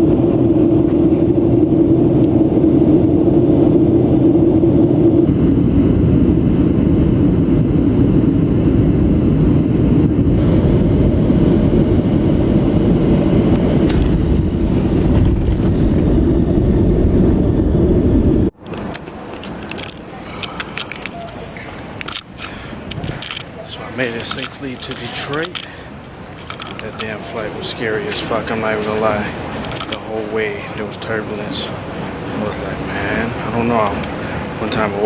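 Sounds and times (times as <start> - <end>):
hum: 0.0 - 18.6
airliner engine rumble in cabin: 0.0 - 35.0.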